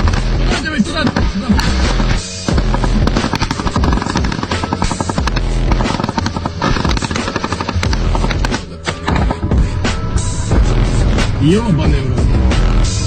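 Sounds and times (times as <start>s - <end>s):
background music: 0.0s - 13.0s
automatic gunfire: 0.9s - 9.4s.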